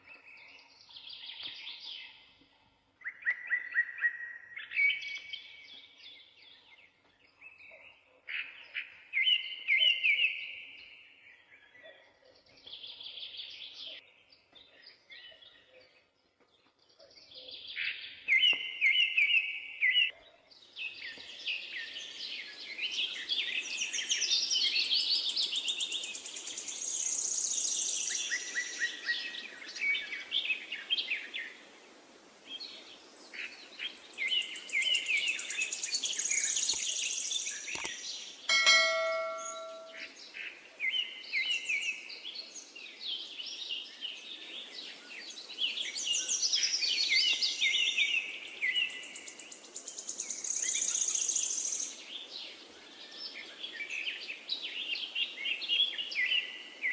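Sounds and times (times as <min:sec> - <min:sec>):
bell-like ring: 0:38.5 - 0:40.1
finch singing: 0:38.5 - 0:40.1.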